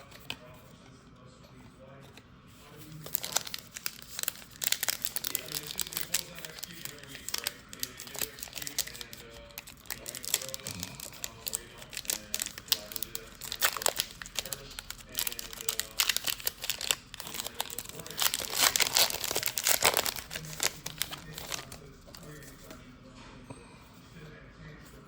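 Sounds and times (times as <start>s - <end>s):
wrapper crinkling: 2.8s - 22.8s.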